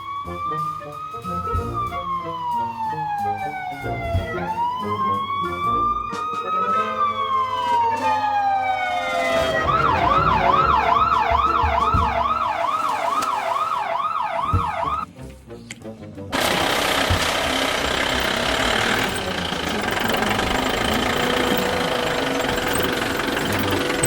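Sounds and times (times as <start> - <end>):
police siren wailing and yelping: 0.0 - 15.1, 16.4 - 24.0
loud rough noise: 16.4 - 24.0.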